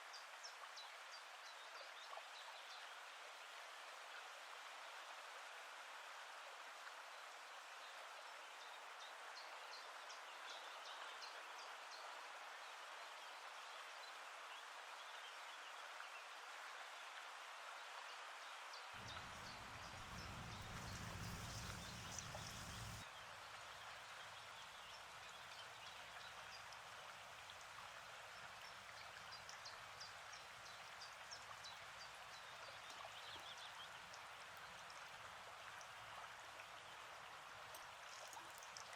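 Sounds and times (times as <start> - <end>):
frying oil sizzling and crackling: 19.0 - 23.0
low rumble: 19.0 - 23.0.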